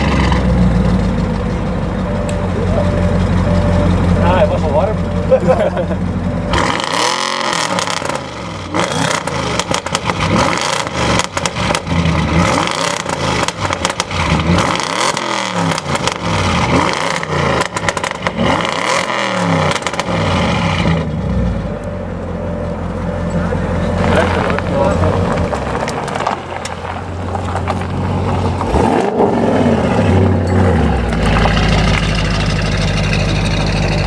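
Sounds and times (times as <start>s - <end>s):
car engine revving hard: 5.3s - 21.4s, 28.6s - 33.9s
exhaust crackles and pops: 7.5s - 18.8s, 19.6s - 21.0s, 24.0s - 30.2s, 30.9s - 34.0s.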